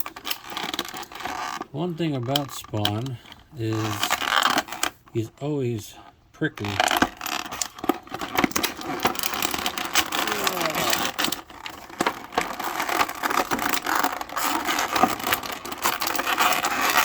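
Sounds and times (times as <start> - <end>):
plastic squeaks: 0.0 - 5.0, 6.5 - 17.0
plastic packaging crackling: 6.6 - 17.0.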